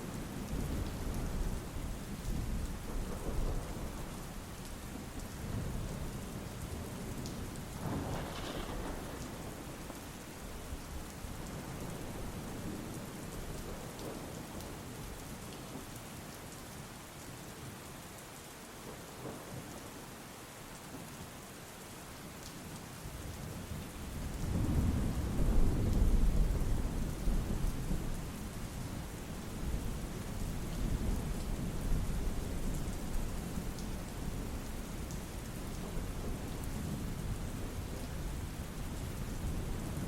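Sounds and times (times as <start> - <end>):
rain falling: 0.0 - 40.0
thunder rumbling: 2.3 - 4.1, 7.8 - 10.0.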